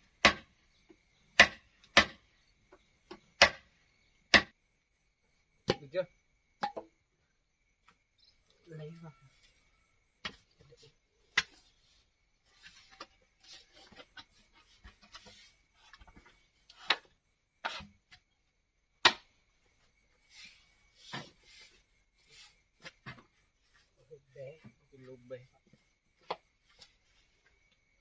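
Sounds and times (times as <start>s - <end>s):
bamboo knocking: 0.2s - 0.5s, 1.4s - 3.7s, 4.3s - 4.6s, 5.6s - 6.0s, 6.6s - 7.0s, 19.0s - 19.3s
bamboo scraping and rubbing: 10.3s - 18.2s, 20.2s - 24.0s.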